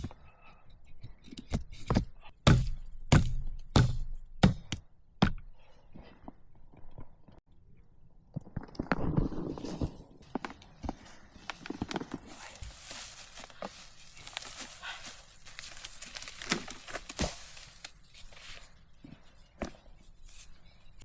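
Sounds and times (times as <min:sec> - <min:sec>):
soft rustling: 0:10.3 - 0:21.0.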